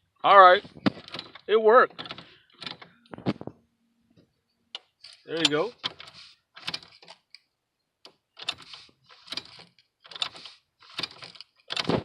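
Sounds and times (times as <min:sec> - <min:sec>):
keyring jangling: 0:05.0 - 0:07.3, 0:08.4 - 0:11.9.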